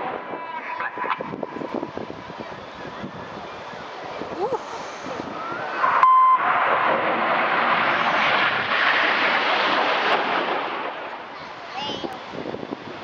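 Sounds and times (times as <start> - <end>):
jet aircraft passing: 0.0 - 13.0
short beep: 5.8 - 6.5.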